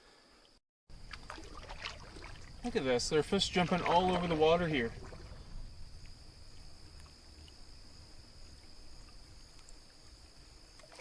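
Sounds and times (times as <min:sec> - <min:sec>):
insects droning: 0:00.0 - 0:11.0
wind: 0:00.0 - 0:11.0
murmur of water: 0:01.0 - 0:11.0.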